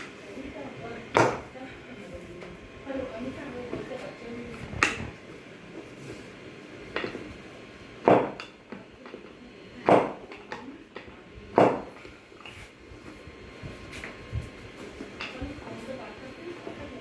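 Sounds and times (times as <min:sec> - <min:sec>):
sharp knocks of chiropractic adjustment: 0:01.1 - 0:01.5, 0:08.0 - 0:08.6, 0:09.8 - 0:10.2, 0:11.6 - 0:12.0.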